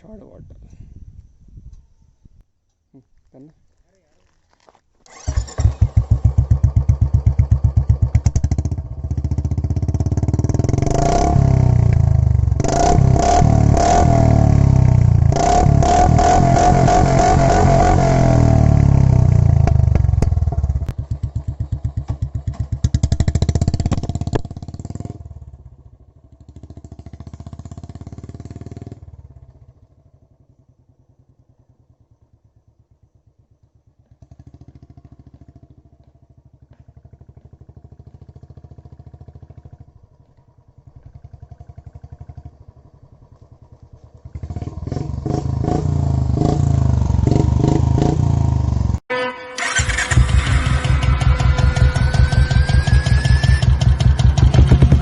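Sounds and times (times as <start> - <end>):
motorcycle engine revving and idling: 5.1 - 49.0, 49.6 - 55.0.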